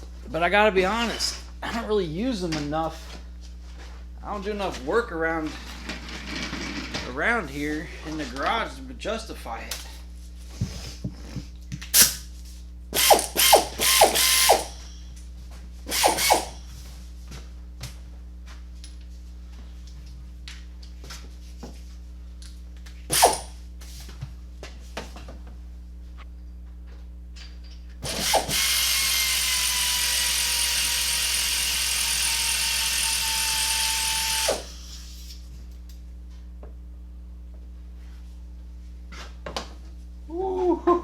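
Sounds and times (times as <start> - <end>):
air ratchet whining hiss: 13.0 - 14.9, 15.9 - 16.6, 23.1 - 23.5, 28.1 - 35.4.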